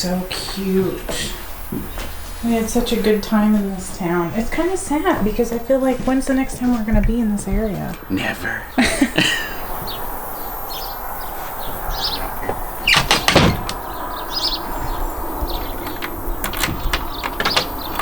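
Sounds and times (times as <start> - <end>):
steady outdoor hiss: 0.0 - 18.0
door shutting with clatter: 11.7 - 18.0.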